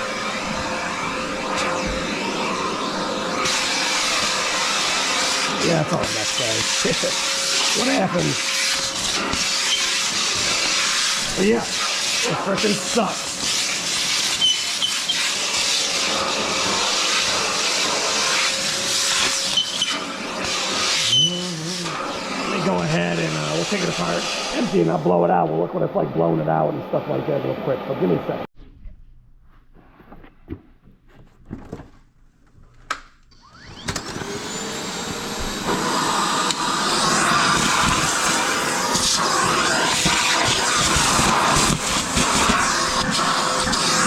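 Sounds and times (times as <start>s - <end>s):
vacuum motor whining: 0.0s - 28.3s, 33.3s - 44.0s
backpack vacuum rushing air: 33.8s - 44.0s.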